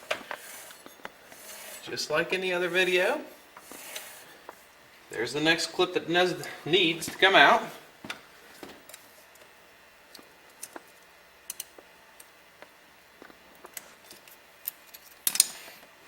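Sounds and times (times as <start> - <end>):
metal scrape: 0.0 - 4.7.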